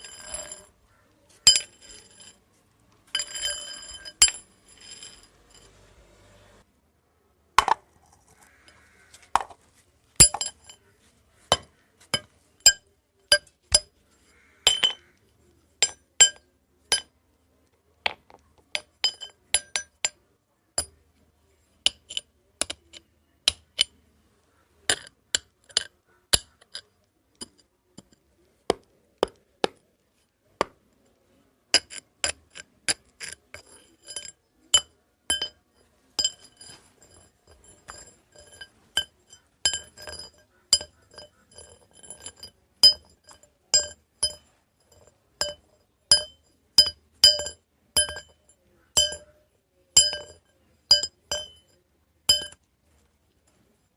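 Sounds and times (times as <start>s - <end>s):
metal rods clinking: 0.0s - 5.9s, 10.2s - 15.2s, 31.8s - 49.4s, 50.0s - 52.6s.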